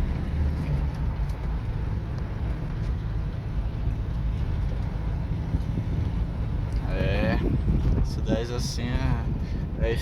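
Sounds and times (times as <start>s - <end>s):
pickup truck engine: 0.0s - 10.0s
road noise: 0.0s - 10.0s.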